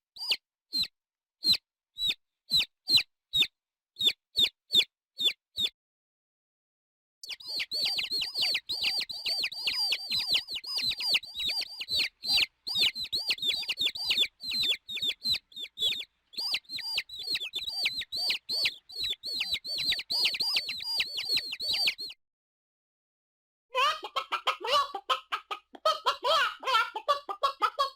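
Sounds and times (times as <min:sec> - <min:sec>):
bird chirping: 0:00.2 - 0:05.8, 0:07.2 - 0:22.2.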